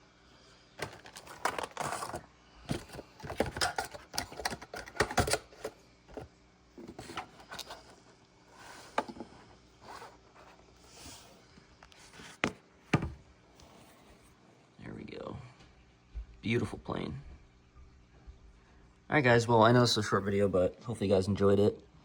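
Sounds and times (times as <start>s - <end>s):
objects scraping on a surface: 0.8s - 4.0s, 6.8s - 11.4s.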